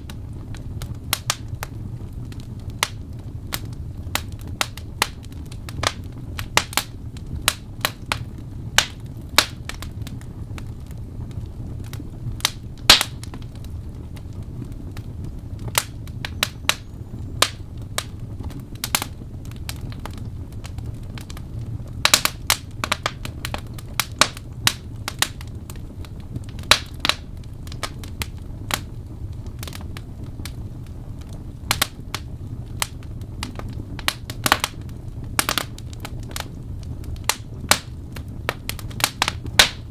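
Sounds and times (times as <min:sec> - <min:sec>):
log fire crackling and popping: 0:00.0 - 0:39.9.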